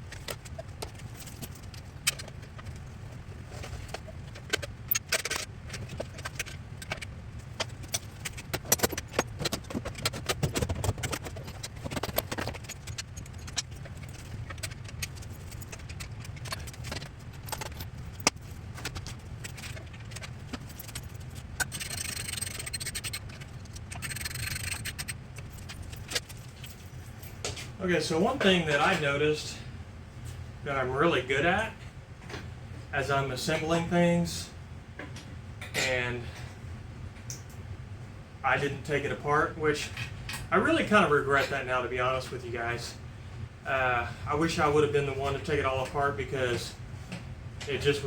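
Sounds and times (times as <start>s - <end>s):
low steady hum: 0.0s - 48.0s
metal parts and tools clinking: 0.1s - 2.8s, 3.5s - 27.6s.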